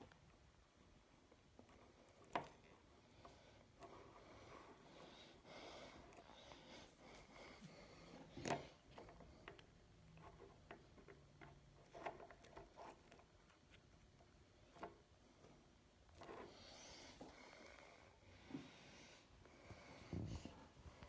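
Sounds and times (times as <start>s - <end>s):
faint clicks and taps: 1.2s - 5.2s, 6.0s - 18.8s.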